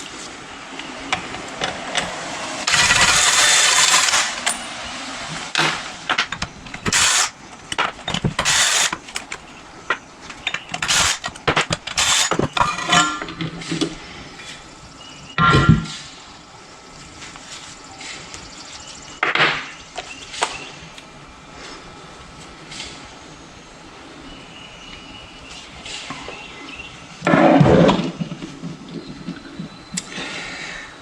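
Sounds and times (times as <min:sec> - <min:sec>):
power tool spinning bolts: 0:01.1 - 0:13.5
metal clinks of tools: 0:10.4 - 0:13.4.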